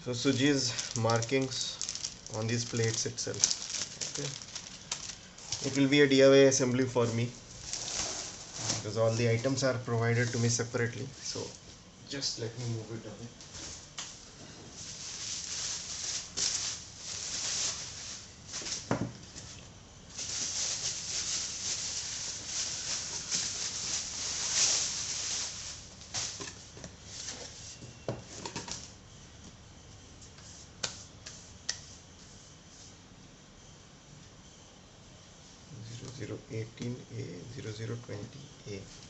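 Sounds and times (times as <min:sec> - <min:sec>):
packaging rustling and crinkling: 0:00.1 - 0:11.6, 0:14.7 - 0:19.5, 0:20.1 - 0:27.8.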